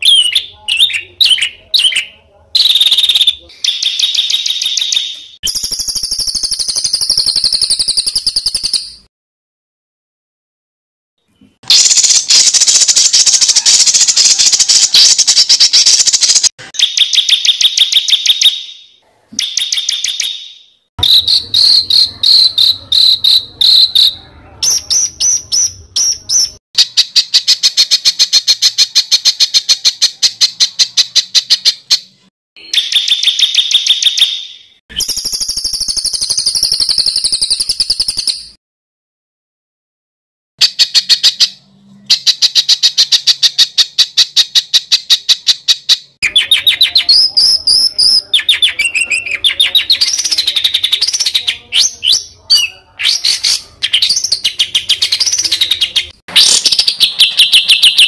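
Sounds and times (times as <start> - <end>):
songbird trills and chattering: 19.4 - 38.3.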